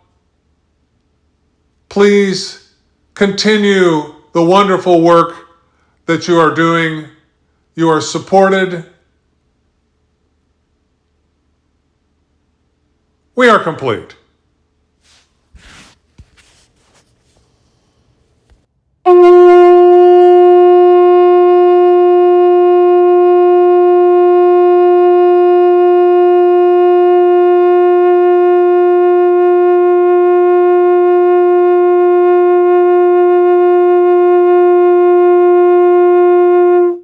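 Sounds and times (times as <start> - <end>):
conch shell trumpet note: 19.0 - 37.0.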